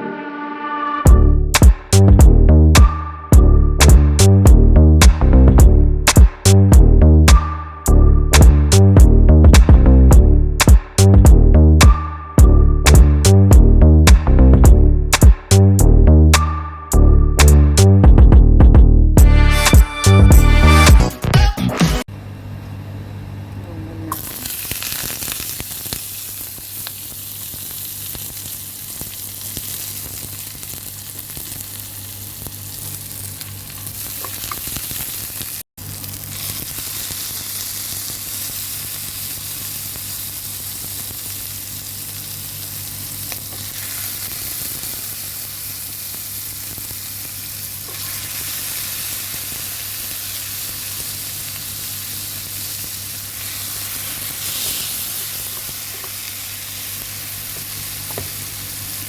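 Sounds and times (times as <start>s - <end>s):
food sizzling in hot oil: 24.2s - 59.0s.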